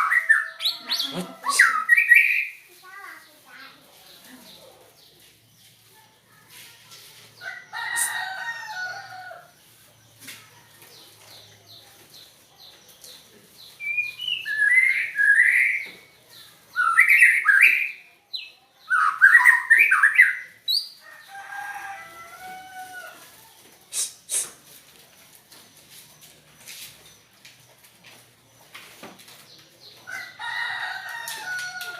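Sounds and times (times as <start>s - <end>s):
songbird calling: 0.0s - 2.6s.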